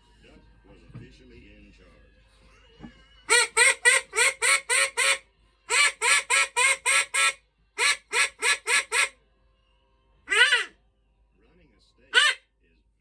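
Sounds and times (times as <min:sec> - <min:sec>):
duck quacking: 0:03.3 - 0:09.1, 0:10.3 - 0:10.7, 0:12.1 - 0:12.4.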